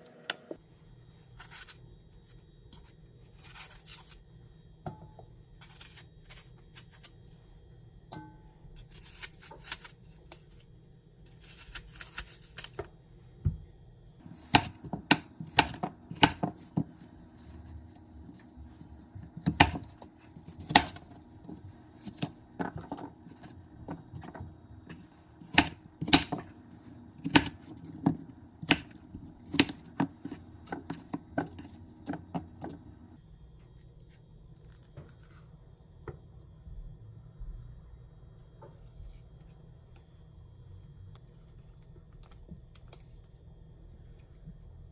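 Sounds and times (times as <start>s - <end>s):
knife cutting on cutting board: 14.2s - 32.9s.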